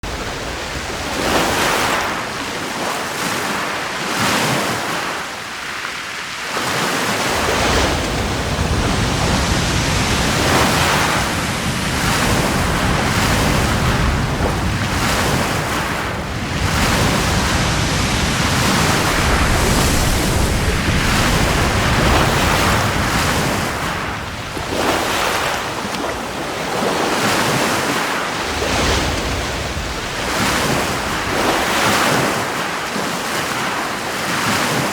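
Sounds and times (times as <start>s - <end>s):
waves breaking: 0.0s - 34.9s
deep rumble: 7.4s - 25.1s.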